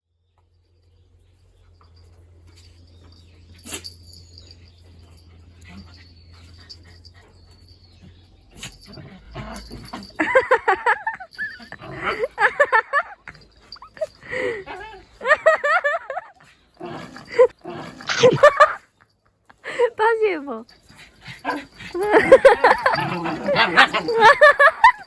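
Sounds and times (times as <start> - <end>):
puppies barking: 8.6 - 17.5, 21.4 - 25.0.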